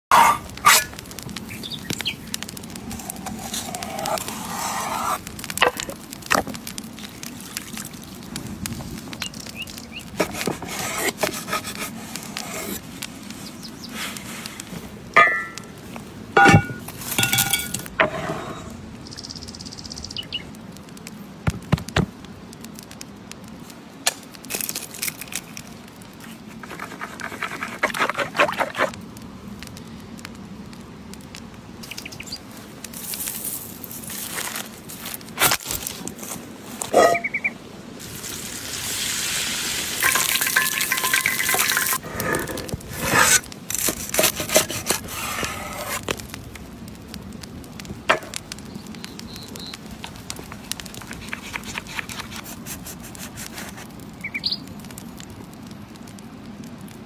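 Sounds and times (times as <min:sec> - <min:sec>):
utensils knocking and tapping: 0:16.4 - 0:18.1.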